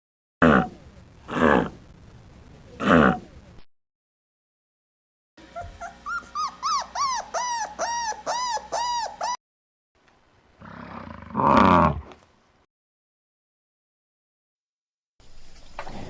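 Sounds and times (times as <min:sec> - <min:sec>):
animal whining cries: 0:05.4 - 0:09.4.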